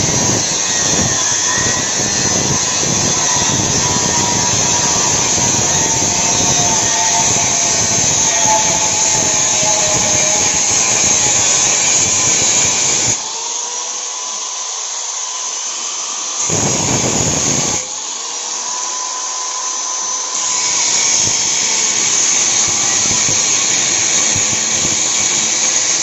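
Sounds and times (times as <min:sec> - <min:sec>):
hissing exhaust noise: 0:00.0 - 0:13.3, 0:16.4 - 0:18.0, 0:20.5 - 0:26.0.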